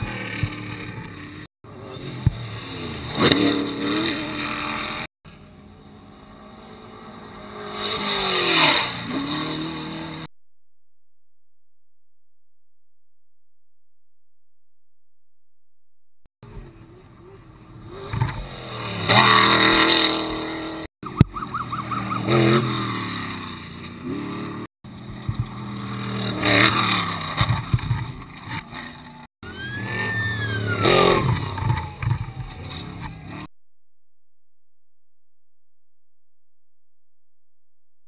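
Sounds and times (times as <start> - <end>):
race truck engines revving: 0.0 - 10.3, 16.4 - 33.5.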